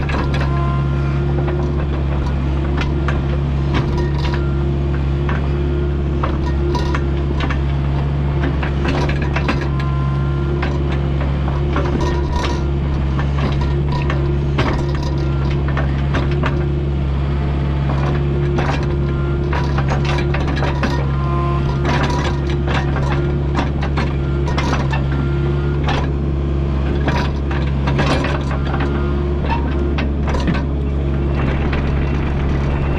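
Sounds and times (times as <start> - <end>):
excavator diesel engine droning: 0.0 - 32.9
bucket clanking on dirt and rock: 6.2 - 7.7, 10.5 - 16.7, 17.9 - 25.2.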